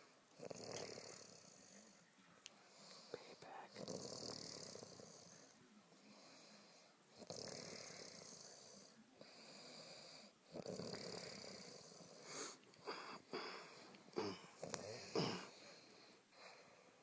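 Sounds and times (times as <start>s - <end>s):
woman snoring: 0.4s - 1.6s, 7.2s - 8.5s, 10.5s - 15.5s.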